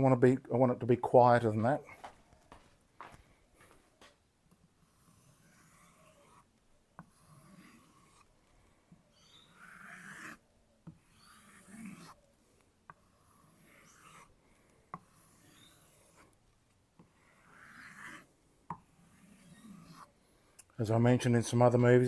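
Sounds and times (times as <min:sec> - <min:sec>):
knife stropping on leather: 0:04.8 - 0:08.4, 0:09.2 - 0:10.4, 0:11.0 - 0:14.4, 0:15.0 - 0:16.4, 0:17.0 - 0:20.2.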